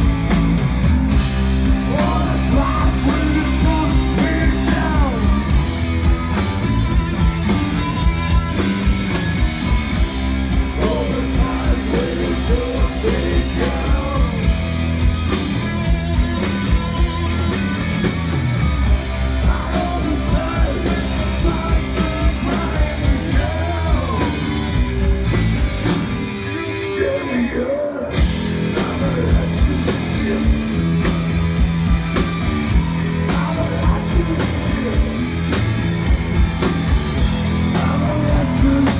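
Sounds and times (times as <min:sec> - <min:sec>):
rock band playing live: 0:00.0 - 0:38.9
person singing: 0:26.5 - 0:31.0.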